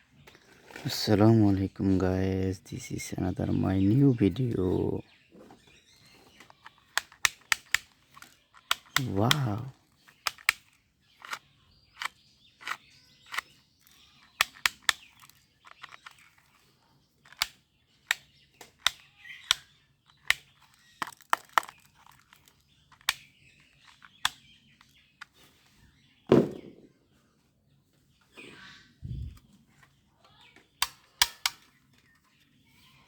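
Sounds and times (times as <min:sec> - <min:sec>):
toy guns clicking and snapping: 0:06.3 - 0:25.4, 0:30.8 - 0:32.2
loud knock: 0:26.3 - 0:26.9.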